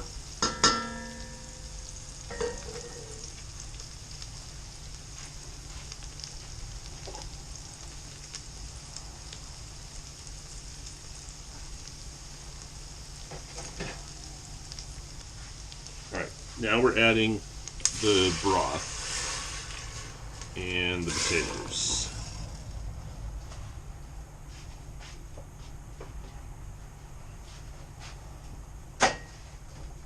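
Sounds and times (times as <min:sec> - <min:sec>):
garlic sizzling in a pan: 0:00.0 - 0:23.0
ringing clink: 0:00.4 - 0:01.5.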